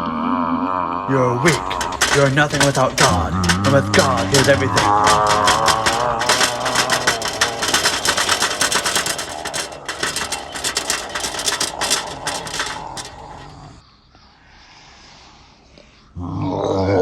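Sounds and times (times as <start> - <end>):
rapid clicking and crackling: 1.3 - 13.8.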